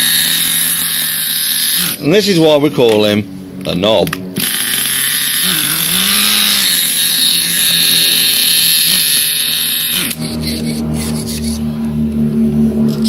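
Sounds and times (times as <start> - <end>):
toy car motor whine: 0.0 - 2.4, 4.4 - 11.7
low pulsing hum: 0.0 - 13.0.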